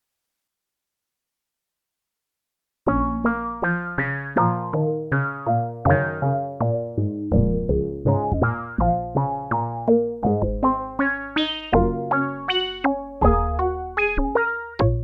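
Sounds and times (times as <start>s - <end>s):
synthesizer chords and bass notes: 7.3s - 15.0s.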